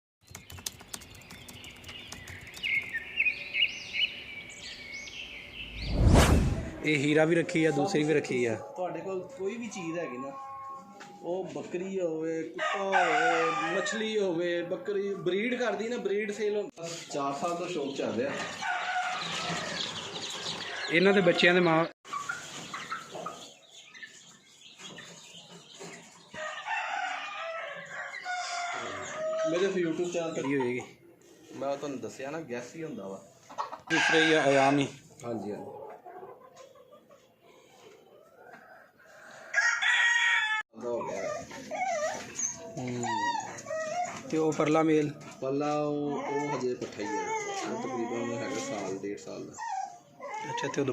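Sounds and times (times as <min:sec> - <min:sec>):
birds chirping: 0:00.2 - 0:11.4, 0:14.2 - 0:33.9, 0:40.8 - 0:50.9
long loud chicken call: 0:12.6 - 0:14.0, 0:39.3 - 0:40.6
chickens clucking: 0:16.8 - 0:27.2, 0:27.8 - 0:31.8, 0:33.0 - 0:39.6, 0:40.8 - 0:50.9.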